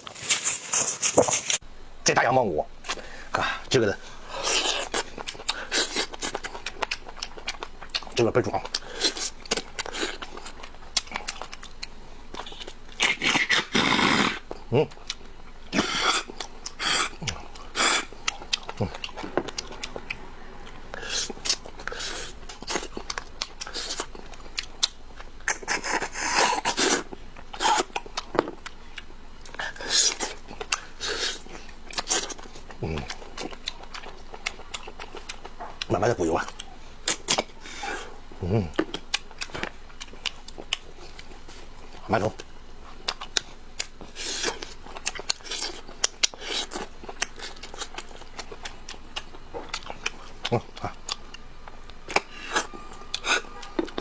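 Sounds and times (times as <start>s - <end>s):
chewing and biting: 4.3s - 54.0s
wet mouth clicks: 4.4s - 41.3s
hissing slurp: 13.0s - 14.4s, 15.7s - 20.2s.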